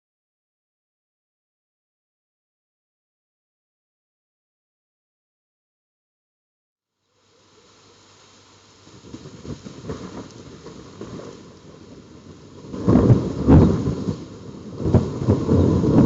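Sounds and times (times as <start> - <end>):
steady rain: 6.9 - 16.0
thunder rumbling: 8.4 - 16.0.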